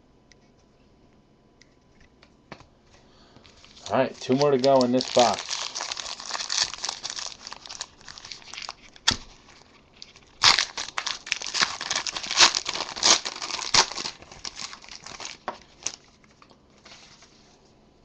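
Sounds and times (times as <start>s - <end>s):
wrapper crinkling and tearing: 3.5s - 17.0s.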